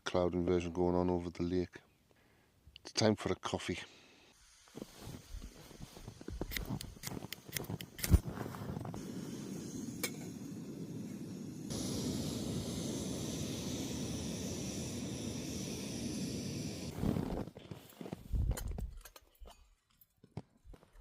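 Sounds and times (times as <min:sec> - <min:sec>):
loud even hiss: 0:04.1 - 0:17.4
low rush: 0:08.0 - 0:17.0.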